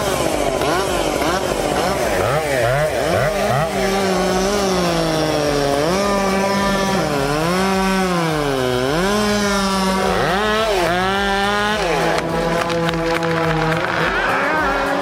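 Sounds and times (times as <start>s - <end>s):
chainsaw cutting wood: 0.0s - 15.0s.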